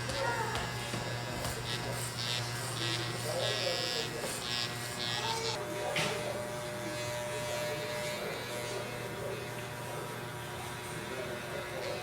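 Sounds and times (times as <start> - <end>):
electrical buzz and hum: 0.0 - 12.0.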